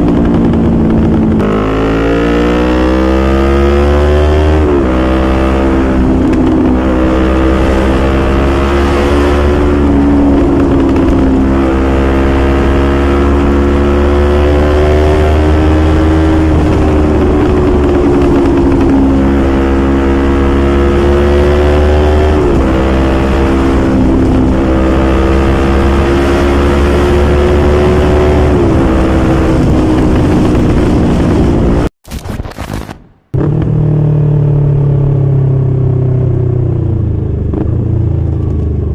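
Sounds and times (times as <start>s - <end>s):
motorcycle engine revving through gears: 0.0s - 31.9s, 33.3s - 38.9s.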